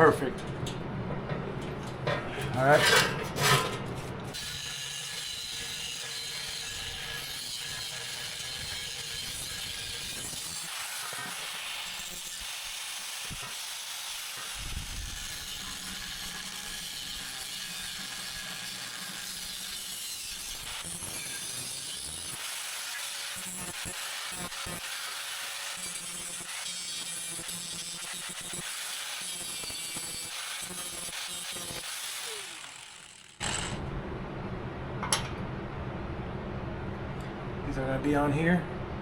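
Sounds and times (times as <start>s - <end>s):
tool cutting metal: 4.3s - 33.8s.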